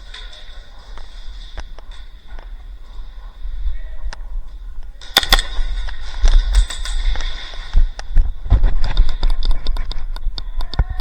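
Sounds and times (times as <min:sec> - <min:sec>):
airsoft guns firing: 0:05.0 - 0:07.0.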